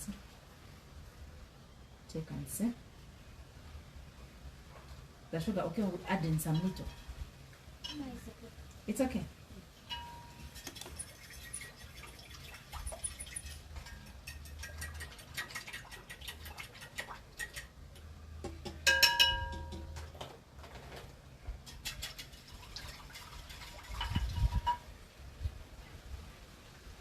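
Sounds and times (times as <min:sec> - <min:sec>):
ringing clink on bowl rim: 0:09.9 - 0:11.2, 0:18.9 - 0:19.9.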